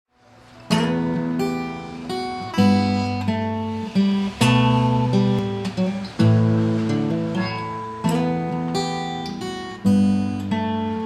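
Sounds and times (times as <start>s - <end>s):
acoustic guitar strumming: 0.2s - 11.0s.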